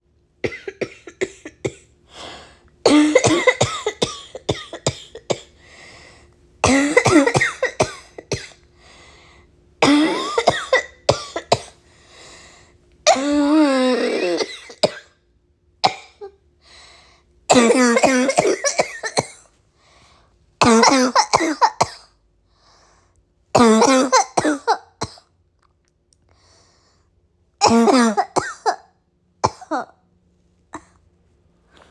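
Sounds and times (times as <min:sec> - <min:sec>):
person coughing: 0:00.4 - 0:01.9, 0:02.8 - 0:05.6, 0:06.6 - 0:08.6, 0:09.8 - 0:11.8, 0:13.1 - 0:15.1, 0:17.5 - 0:19.4, 0:20.6 - 0:22.1, 0:23.6 - 0:25.3, 0:27.6 - 0:30.0.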